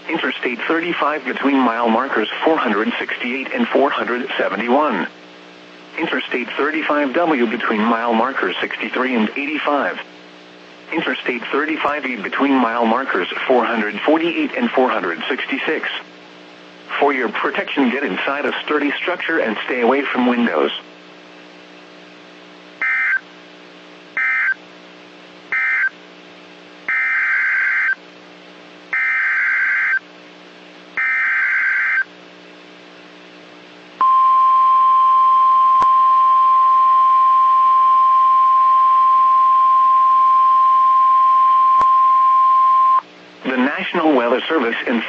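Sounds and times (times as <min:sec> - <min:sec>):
faint radio hum: 0:00.0 - 0:26.9, 0:43.0 - 0:45.0
steady alarm tone: 0:22.8 - 0:23.2, 0:24.2 - 0:24.6, 0:25.5 - 0:26.0, 0:26.9 - 0:28.0, 0:29.0 - 0:30.0, 0:31.0 - 0:32.1.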